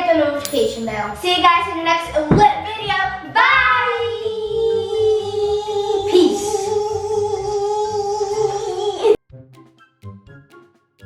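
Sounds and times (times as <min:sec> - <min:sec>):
backing beat: 0:00.5 - 0:08.0.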